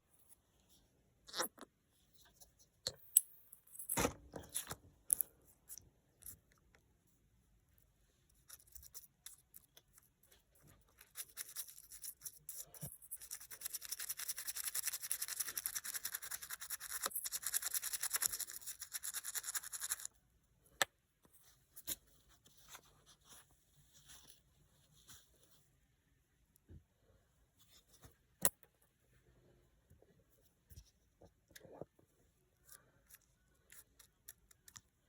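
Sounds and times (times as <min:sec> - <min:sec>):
brush scrubbing a coin: 0:10.9 - 0:20.1.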